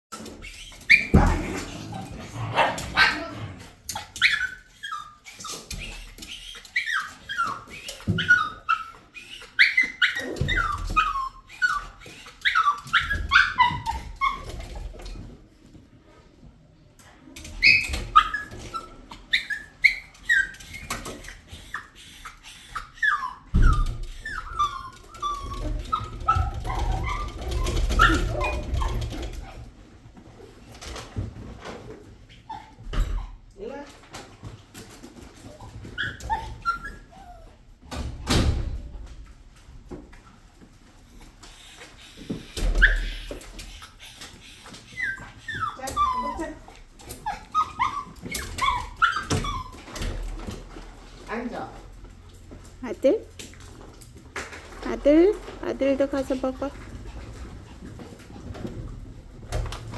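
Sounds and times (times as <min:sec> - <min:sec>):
dog whining and yipping: 0:00.4 - 0:01.9, 0:03.0 - 0:14.9, 0:17.4 - 0:29.6, 0:35.5 - 0:37.6, 0:42.6 - 0:50.5.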